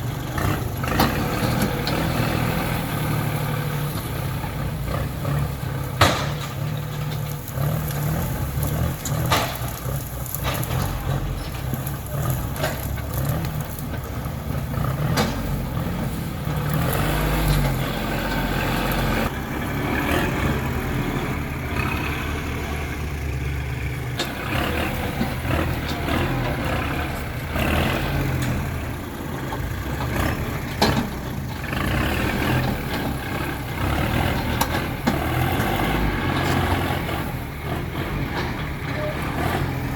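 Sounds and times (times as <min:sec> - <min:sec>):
heavy diesel engines running: 0:00.0 - 0:39.9.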